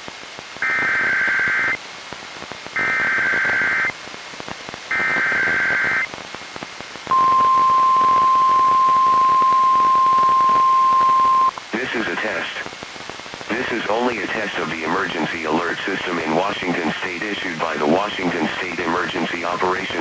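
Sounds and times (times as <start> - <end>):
radio static hiss: 7.0 - 20.0
single-pitch warning alarm tone: 7.1 - 11.5
digital data bursts: 13.5 - 20.0.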